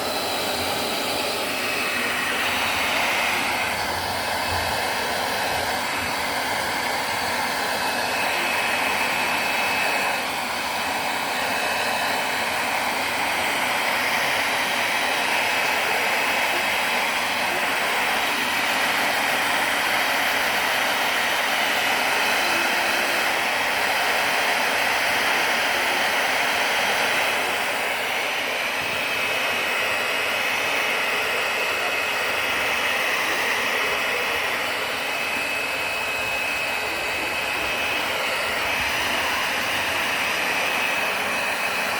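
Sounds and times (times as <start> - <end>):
hair dryer blowing: 0.0 - 41.9.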